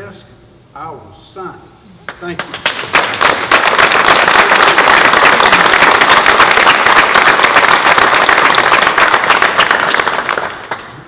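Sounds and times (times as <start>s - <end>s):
audience applauding: 2.4s - 11.0s.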